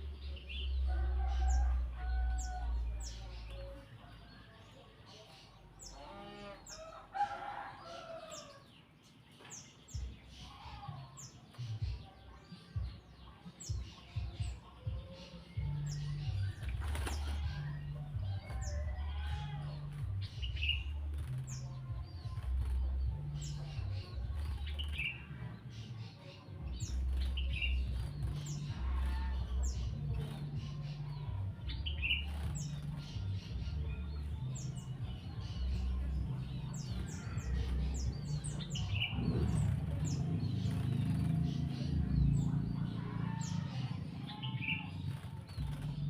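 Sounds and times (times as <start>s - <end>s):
bird wings flapping: 16.6s - 17.6s.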